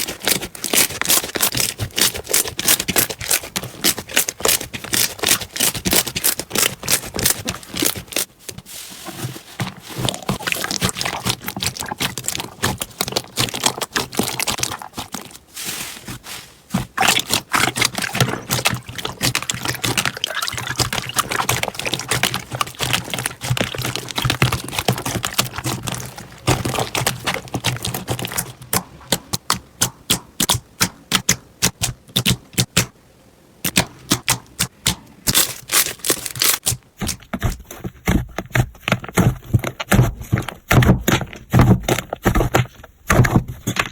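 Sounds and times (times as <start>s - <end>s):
slime squishing: 0.0s - 32.9s, 33.6s - 43.9s.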